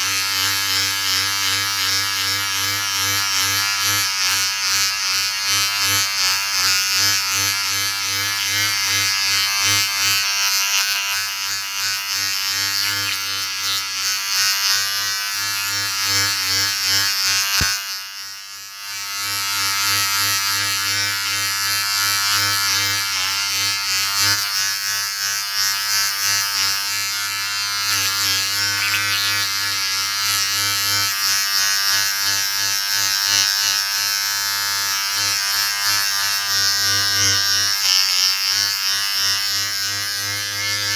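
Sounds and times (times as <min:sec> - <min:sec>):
electric shaver buzzing: 0:00.0 - 0:40.9
shaver click: 0:16.0 - 0:18.0.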